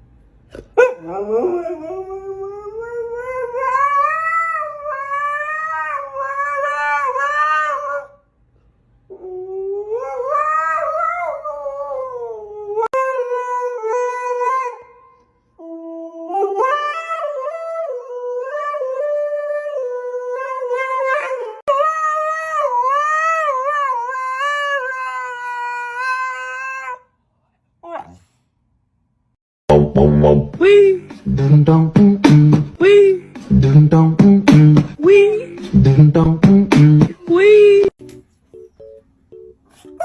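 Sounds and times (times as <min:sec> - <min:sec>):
dog howling: 0:15.8 - 0:27.1.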